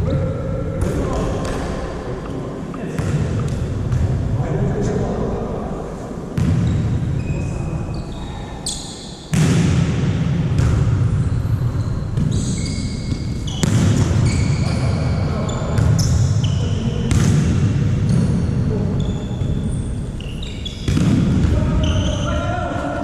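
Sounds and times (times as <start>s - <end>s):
sneakers squeaking on floor: 6.4s - 9.4s, 10.6s - 22.4s
ball hits: 9.3s - 11.1s, 13.1s - 14.4s, 20.8s - 21.6s.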